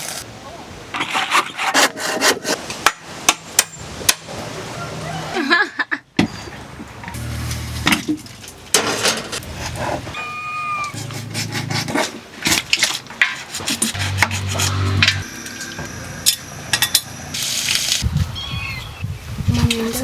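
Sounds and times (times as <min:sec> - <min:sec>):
dishes and utensils clattering: 0:07.9 - 0:10.1.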